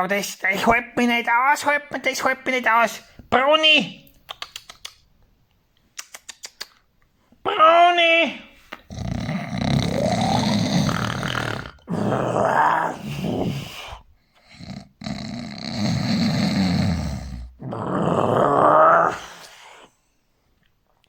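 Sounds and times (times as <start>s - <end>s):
person snoring loudly: 8.9s - 19.9s.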